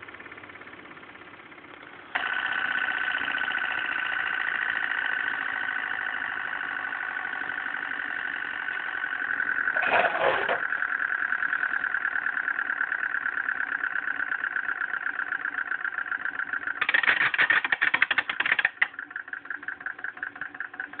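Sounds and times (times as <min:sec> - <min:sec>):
grinder high whine: 0:02.0 - 0:21.0
rapid rattling: 0:05.2 - 0:21.0.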